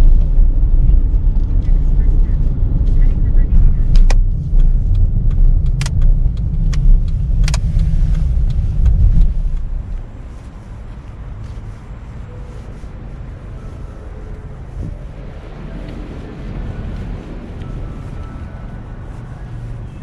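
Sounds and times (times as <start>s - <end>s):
car road rumble: 0.0s - 20.0s
sharp clicks: 3.9s - 9.7s.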